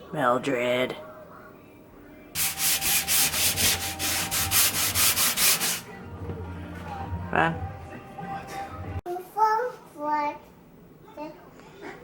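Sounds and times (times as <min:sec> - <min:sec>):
rhythmic rubbing strokes: 0:02.4 - 0:05.9.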